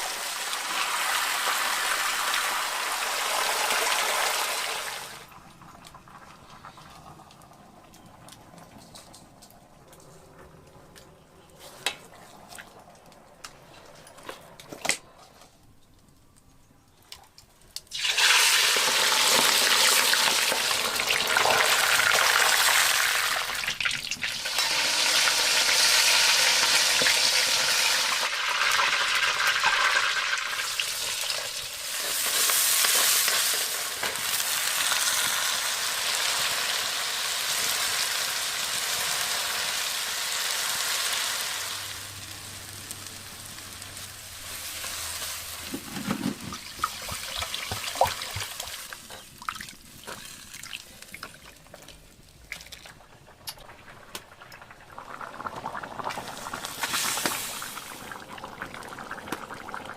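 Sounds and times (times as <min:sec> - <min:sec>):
food sizzling in hot oil: 0:17.9 - 0:49.4, 0:56.0 - 0:58.3.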